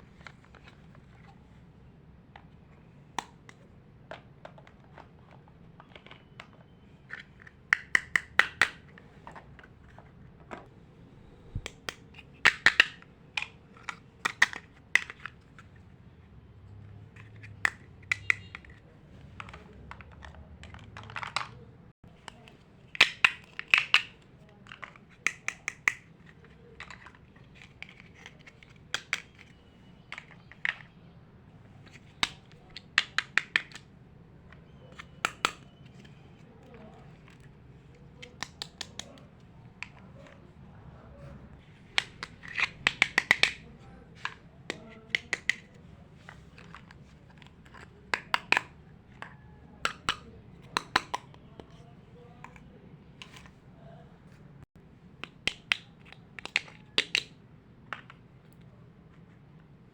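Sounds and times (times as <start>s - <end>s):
plastic toy pieces clicking: 4.4s - 9.0s, 11.6s - 15.6s, 17.2s - 18.8s, 22.2s - 30.9s, 31.8s - 33.9s, 34.5s - 36.1s, 38.2s - 39.2s, 41.9s - 45.8s, 46.6s - 51.7s, 55.2s - 58.2s.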